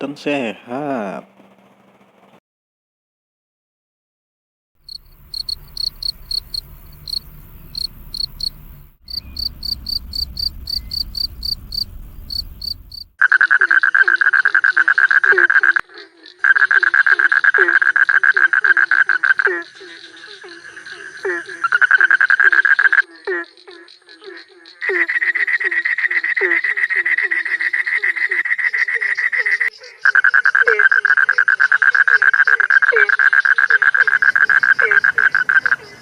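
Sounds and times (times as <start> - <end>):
low rumble: 0.0 - 2.4, 4.8 - 13.2
cricket chirping: 4.8 - 13.7, 16.0 - 36.0
frog trilling call: 4.9 - 36.0.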